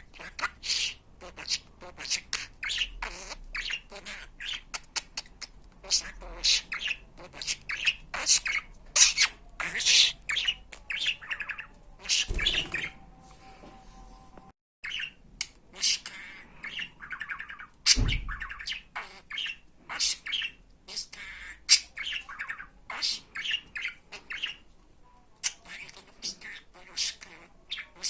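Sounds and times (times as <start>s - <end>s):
budgerigar chirping: 0.0s - 13.0s, 14.8s - 24.7s, 25.5s - 28.0s.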